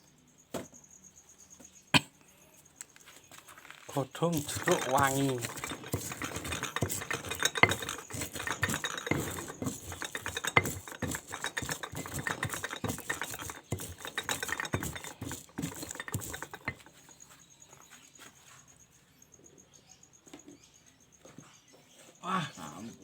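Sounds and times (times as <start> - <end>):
pestle grinding in stone mortar: 3.8 - 17.2.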